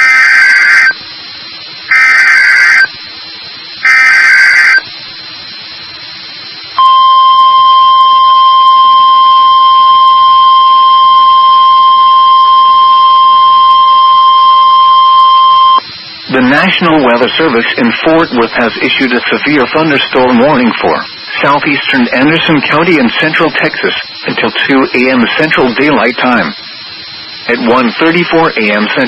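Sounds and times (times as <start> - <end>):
steady warning alarm tone: 0.0 - 1.0, 1.9 - 3.0, 3.8 - 4.9, 6.8 - 15.8.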